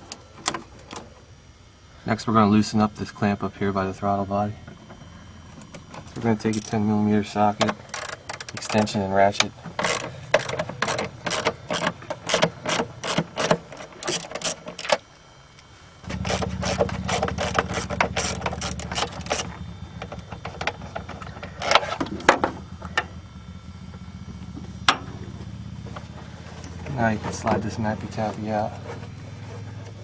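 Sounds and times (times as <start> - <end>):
steady low hum: 0.0 - 30.0
ratchet clicking: 7.7 - 15.0, 16.1 - 23.2.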